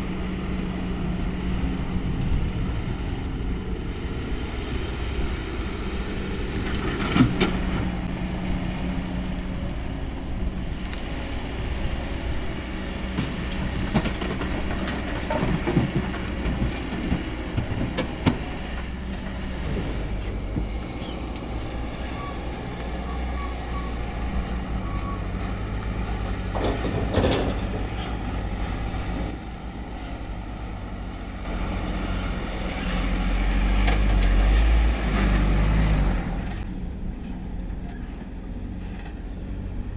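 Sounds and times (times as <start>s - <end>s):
excavator diesel engine: 0.0s - 39.9s.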